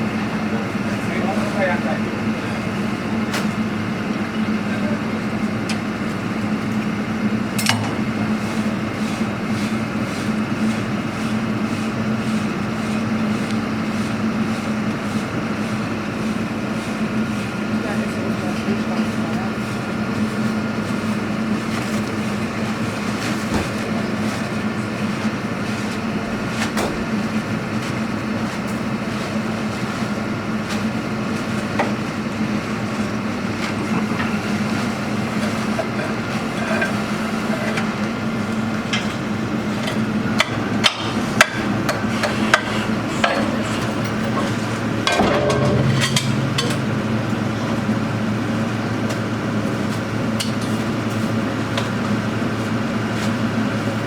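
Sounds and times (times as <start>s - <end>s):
drilling rig engine running: 0.0s - 54.0s
metal knocks and clanks: 42.6s - 49.3s.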